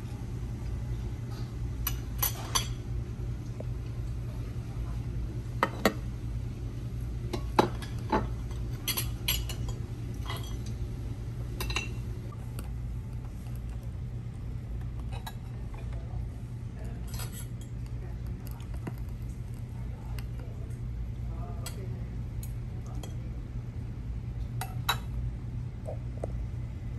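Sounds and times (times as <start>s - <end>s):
steady low hum: 0.0s - 26.9s
cutlery and dishes clinking: 17.0s - 17.8s.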